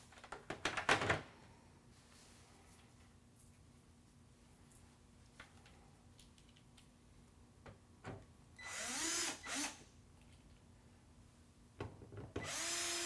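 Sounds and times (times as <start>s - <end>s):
power drill driving screws: 8.6s - 9.8s, 12.4s - 13.0s.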